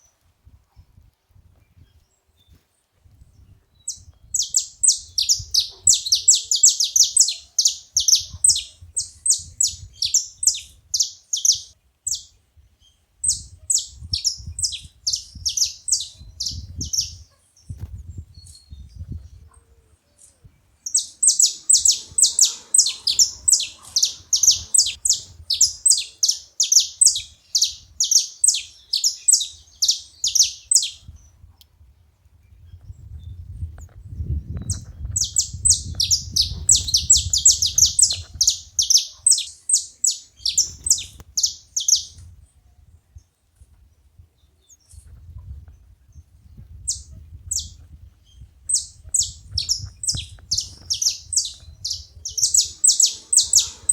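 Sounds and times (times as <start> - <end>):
finches chirping and singing: 3.8 - 12.3, 13.2 - 19.4, 20.8 - 31.2, 34.6 - 42.2, 46.7 - 53.9.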